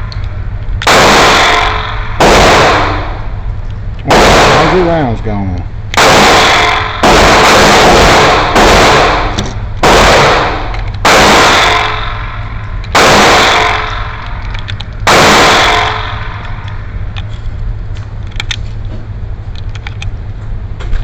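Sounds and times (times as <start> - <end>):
pistol shots echoing: 0.8 - 3.3, 4.1 - 5.2, 6.0 - 14.4, 15.0 - 16.6.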